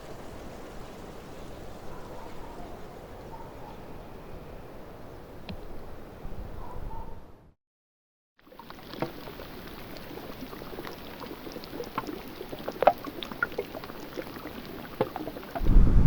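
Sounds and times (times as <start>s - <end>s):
water trickling and gurgling: 8.4s - 15.6s.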